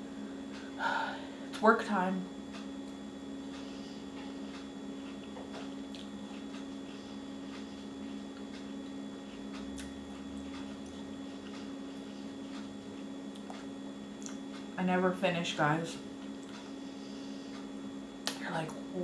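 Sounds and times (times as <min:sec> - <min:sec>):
steady low hum: 0:00.0 - 0:19.0
chewing fruit: 0:02.4 - 0:14.8, 0:16.2 - 0:16.8.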